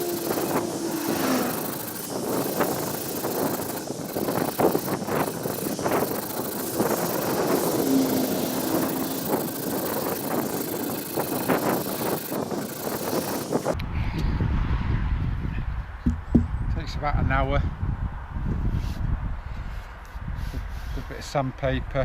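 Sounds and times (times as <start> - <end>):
hand tool scraping wood: 0.0 - 13.8
road traffic: 0.0 - 16.6.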